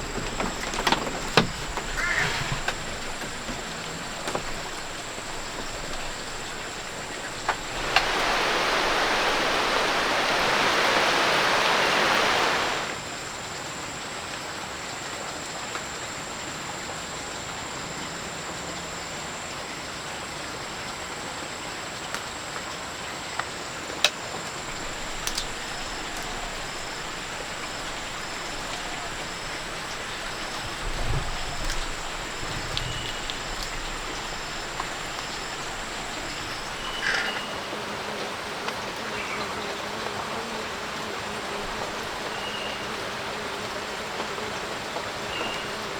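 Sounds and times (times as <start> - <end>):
stream water flowing: 0.0 - 45.9
faint chirps: 24.7 - 37.7.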